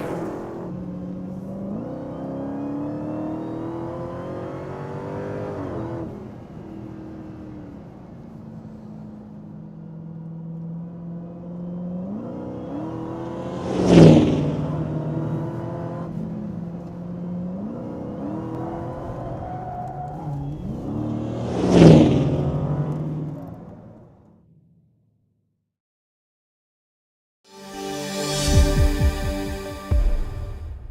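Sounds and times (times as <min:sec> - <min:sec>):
car engine accelerating: 0:00.0 - 0:24.9.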